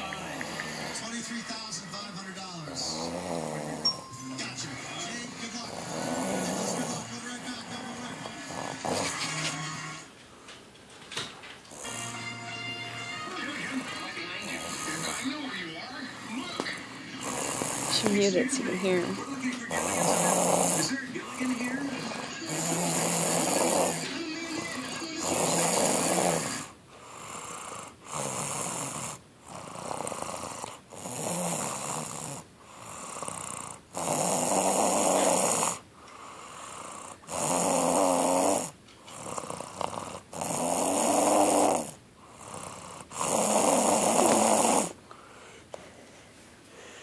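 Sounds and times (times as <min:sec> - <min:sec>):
loud rasping snore: 0:00.0 - 0:01.2, 0:02.7 - 0:03.9, 0:05.4 - 0:09.4, 0:17.2 - 0:24.2, 0:25.2 - 0:45.0
quiet breathing: 0:26.0 - 0:33.9, 0:35.1 - 0:37.3, 0:41.8 - 0:47.0.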